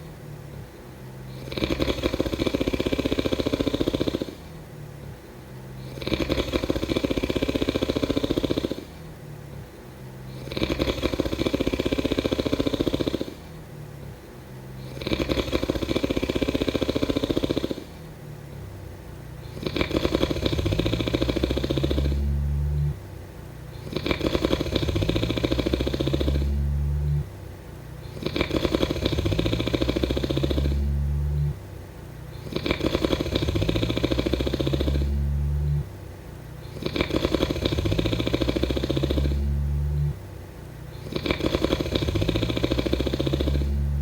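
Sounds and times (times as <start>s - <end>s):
person snoring: 1.3s - 4.4s, 5.8s - 8.9s, 10.3s - 13.4s, 14.8s - 18.0s, 19.4s - 23.0s, 23.8s - 27.2s, 28.0s - 31.6s, 32.4s - 35.9s, 36.6s - 40.2s, 41.0s - 44.0s.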